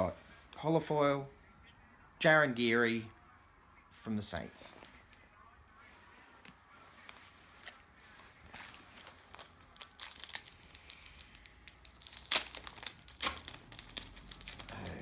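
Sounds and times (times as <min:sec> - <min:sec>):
wrapper tearing and crinkling: 0:08.5 - 0:15.0.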